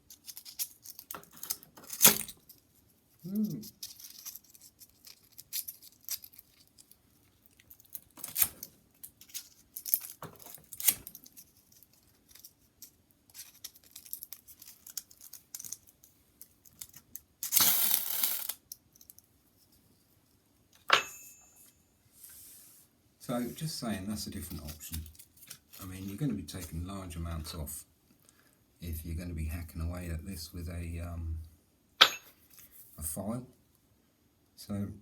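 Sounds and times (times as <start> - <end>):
rustles and scratches: 0.0 - 17.2, 22.1 - 27.6.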